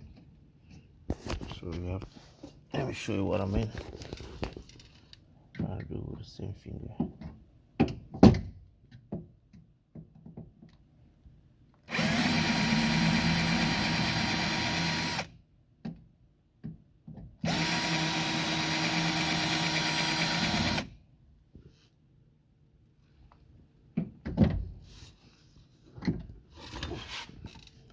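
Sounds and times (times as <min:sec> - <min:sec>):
power drill drilling: 0:11.9 - 0:15.3, 0:17.4 - 0:20.9.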